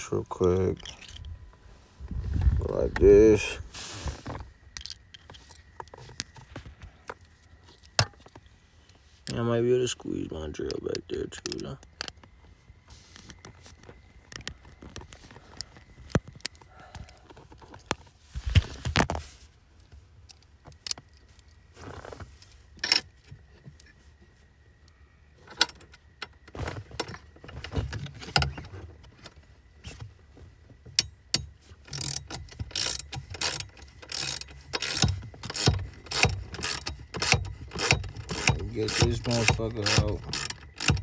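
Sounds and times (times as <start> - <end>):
tools and metal parts clattering: 0.0 - 1.4, 30.9 - 41.0.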